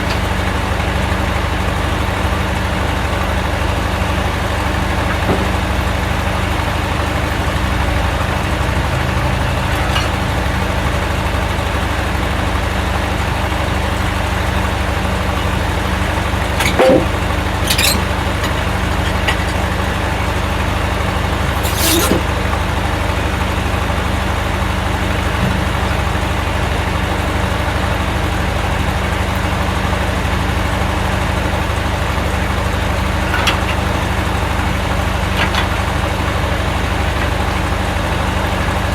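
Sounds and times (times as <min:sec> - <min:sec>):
engine droning: 0:00.0 - 0:38.9
short sharp clanks: 0:16.6 - 0:19.8, 0:21.6 - 0:22.3.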